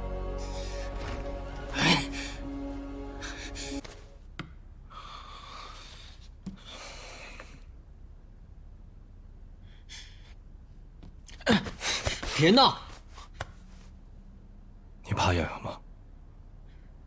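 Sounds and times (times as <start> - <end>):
person gasping: 0.3 - 2.5.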